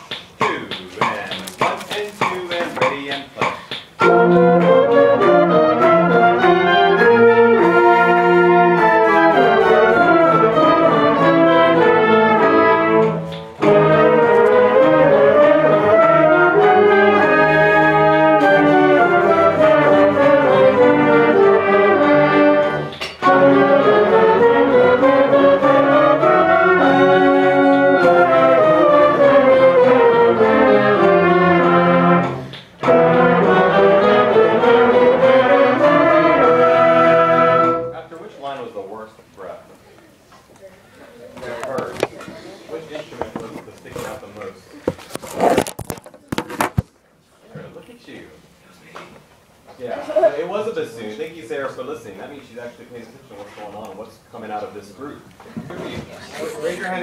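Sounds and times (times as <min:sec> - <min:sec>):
concert band playing chords: 0:04.0 - 0:37.9.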